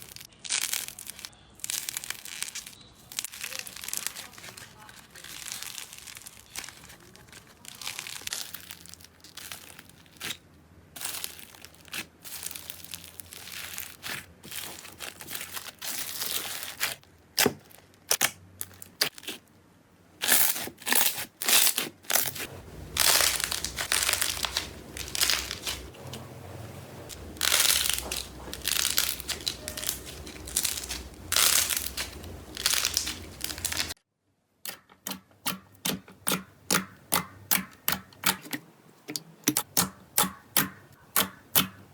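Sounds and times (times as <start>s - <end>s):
slime squelching by hand: 0.0s - 10.4s, 11.0s - 19.5s, 20.2s - 34.0s.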